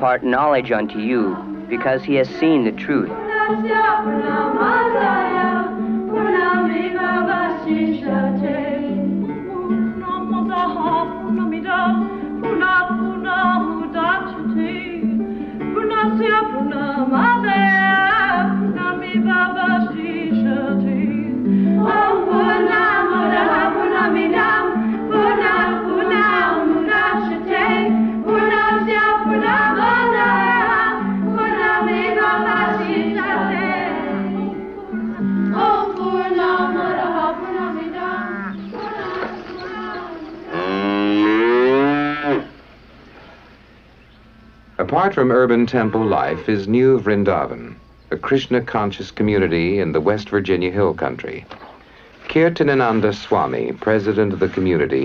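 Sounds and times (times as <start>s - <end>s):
group singing devotional song: 0.7s - 14.0s, 16.8s - 42.5s
instrumental accompaniment: 20.6s - 42.6s.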